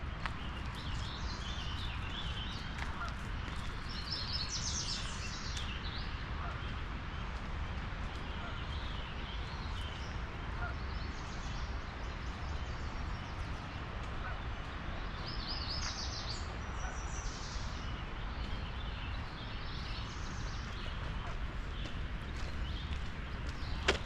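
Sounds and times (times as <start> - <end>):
steady low rumble: 0.0 - 24.0
songbirds chirping and singing: 8.2 - 24.0.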